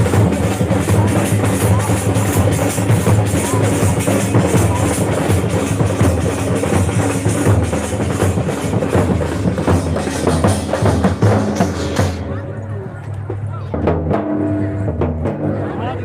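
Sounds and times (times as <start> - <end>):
loud music with drum beat: 0.0 - 12.4.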